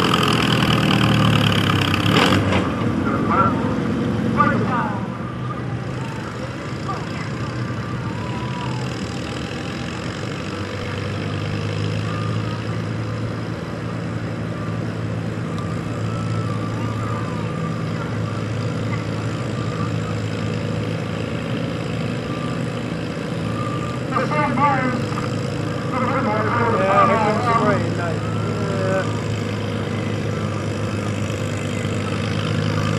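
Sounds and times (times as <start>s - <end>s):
deep engine hum: 0.0s - 32.9s
tractor engine idling: 12.9s - 32.9s.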